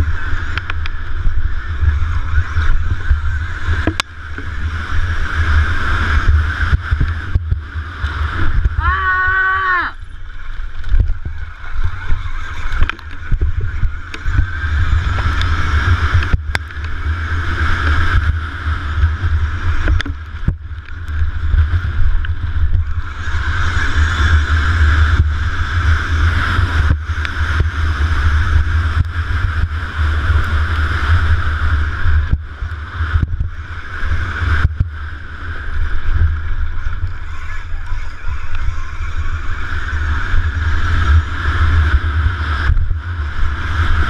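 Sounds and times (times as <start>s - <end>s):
wind buffeting microphone: 0.0s - 44.0s.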